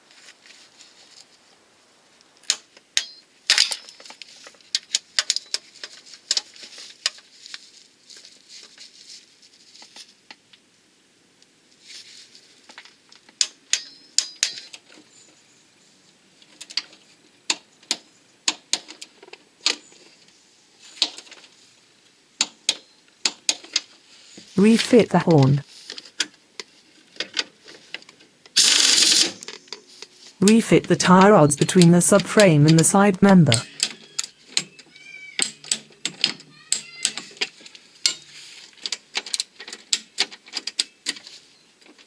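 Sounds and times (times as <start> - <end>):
metallic clicks of hand tools: 2.5 - 4.1, 13.4 - 14.8, 33.5 - 41.2.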